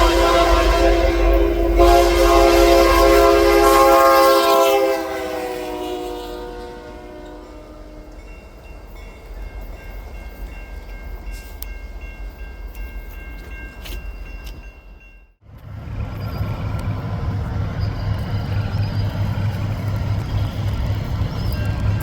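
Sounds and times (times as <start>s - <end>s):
train horn: 0.0s - 8.3s
rumble of passing train: 0.0s - 22.0s.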